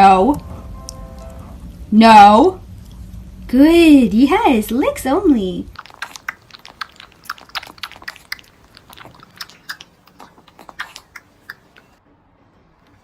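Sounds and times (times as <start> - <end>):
dog licking and chewing food: 5.7 - 12.0.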